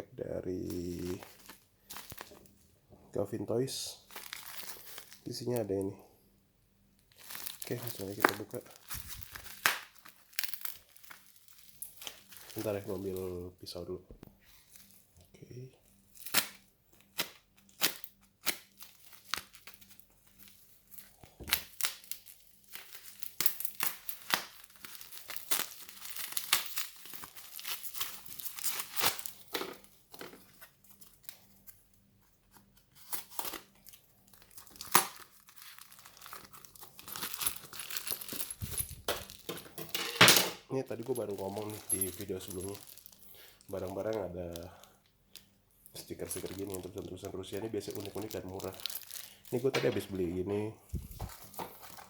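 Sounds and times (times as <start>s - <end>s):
wrapping crinkling and rustling: 0.5s - 2.7s, 3.5s - 5.9s, 6.9s - 40.0s, 40.7s - 52.0s
packaging tearing: 4.1s - 5.4s, 7.1s - 13.2s, 16.2s - 29.6s, 32.9s - 39.5s, 41.0s - 44.7s, 46.0s - 50.1s.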